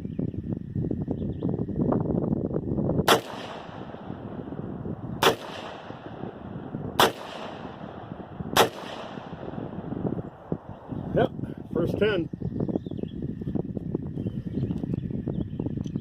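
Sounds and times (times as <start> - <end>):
rifle shots: 3.1 - 10.7.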